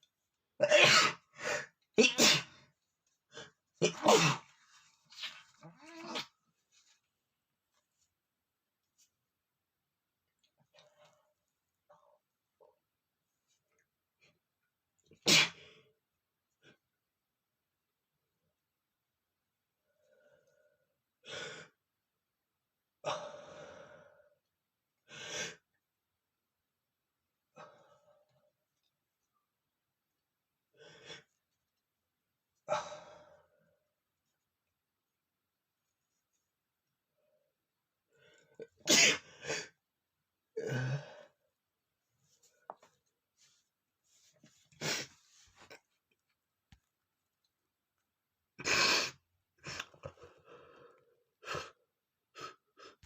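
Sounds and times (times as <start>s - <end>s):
man sneezing: 2.0s - 2.6s, 3.8s - 4.5s, 38.8s - 39.6s.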